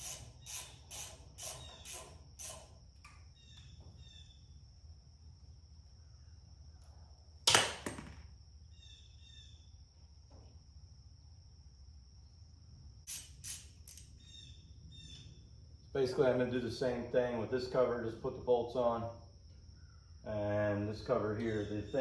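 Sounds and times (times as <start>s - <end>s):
faint bird chirps: 3.2s - 4.7s, 8.6s - 9.8s, 14.2s - 15.6s, 19.7s - 20.2s, 21.4s - 22.0s.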